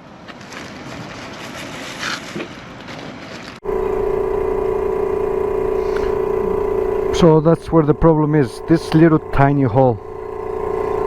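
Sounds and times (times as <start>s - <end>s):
air pump buzzing: 3.6s - 11.0s.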